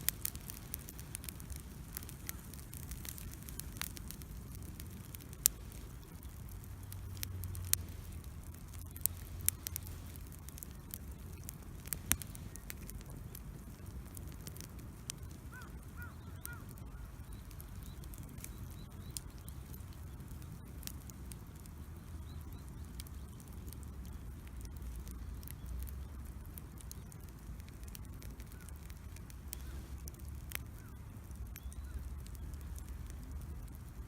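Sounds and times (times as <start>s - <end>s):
campfire crackling and popping: 0.0s - 34.0s.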